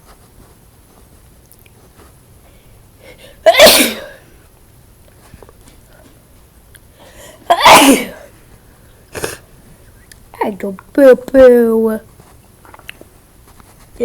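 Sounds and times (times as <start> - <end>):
person sneezing: 3.2 - 4.3, 7.2 - 8.3, 9.1 - 9.5.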